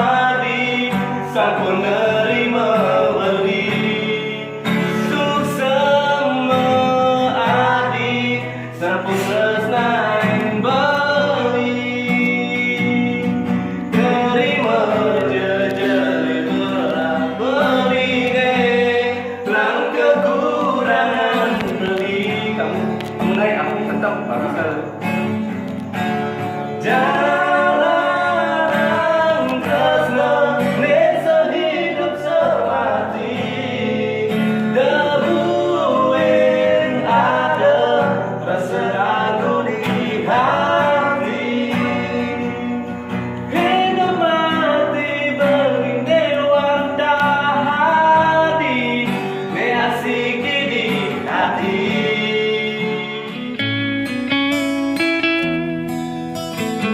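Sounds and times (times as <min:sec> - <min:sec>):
person singing: 0:00.0 - 0:25.0, 0:26.8 - 0:55.6
acoustic guitar strumming: 0:00.0 - 0:56.9.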